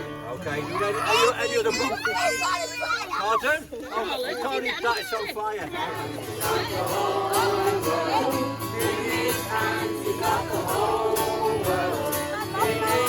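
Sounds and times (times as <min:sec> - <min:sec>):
group of people singing: 0:05.6 - 0:13.0.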